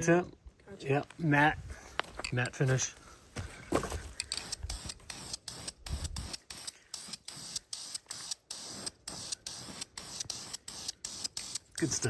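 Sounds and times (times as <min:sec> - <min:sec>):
aerosol can spraying hiss: 0:04.7 - 0:12.0.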